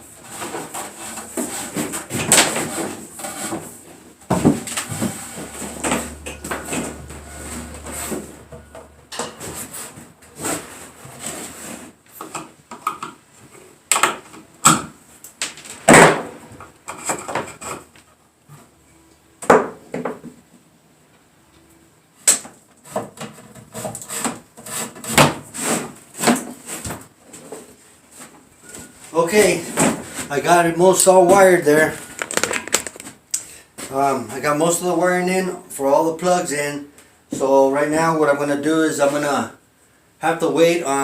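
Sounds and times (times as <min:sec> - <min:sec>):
knocks and scrapes on wood: 0:00.2 - 0:13.1, 0:22.4 - 0:28.4.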